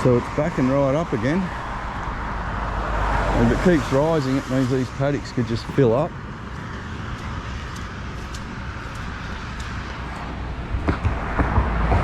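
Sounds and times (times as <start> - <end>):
road traffic rumble: 0.0 - 12.0
low thumps: 5.5 - 12.0.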